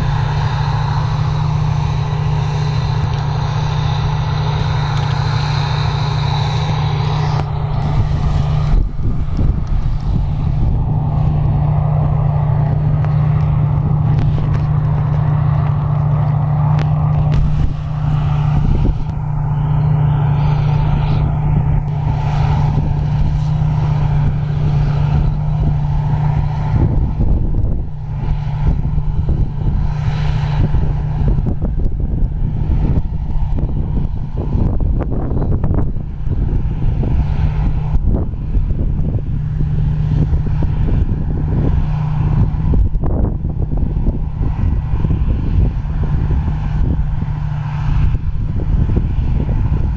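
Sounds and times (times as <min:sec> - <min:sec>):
diesel engine humming: 0:00.0 - 0:49.9.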